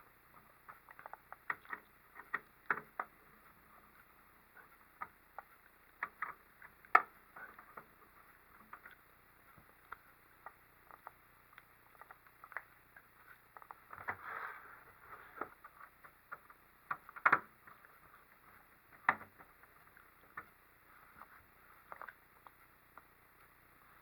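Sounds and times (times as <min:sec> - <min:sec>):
small parts clicking and tapping: 0:15.4 - 0:17.6.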